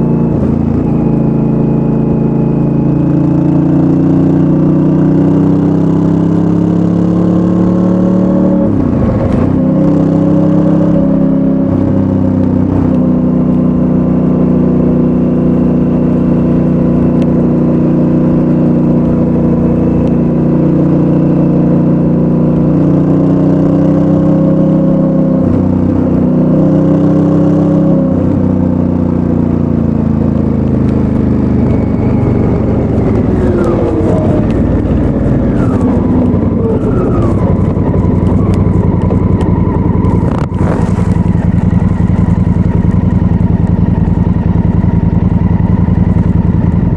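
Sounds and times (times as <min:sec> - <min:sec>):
motorcycle engine pulling: 0:30.5 - 0:46.9.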